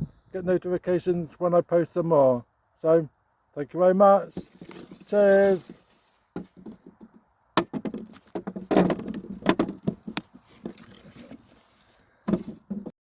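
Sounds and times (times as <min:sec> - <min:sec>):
hard objects knocking and clattering: 0:06.4 - 0:11.4, 0:12.3 - 0:13.0.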